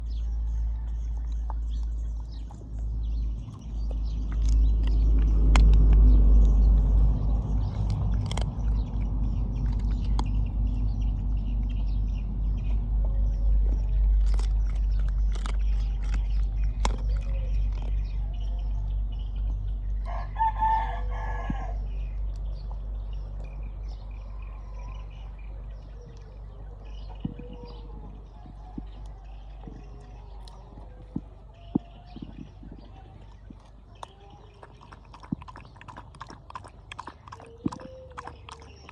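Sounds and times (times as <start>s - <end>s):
low rumble: 0.0s - 38.9s
rooster crowing: 20.1s - 21.8s.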